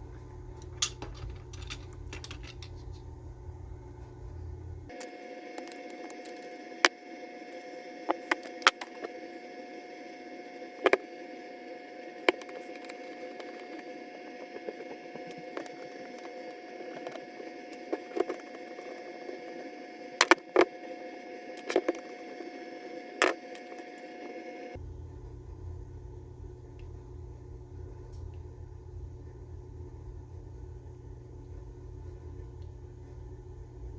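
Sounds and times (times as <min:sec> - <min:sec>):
steady hum: 0:00.0 - 0:33.9
metal parts and tools clicking: 0:00.7 - 0:03.0.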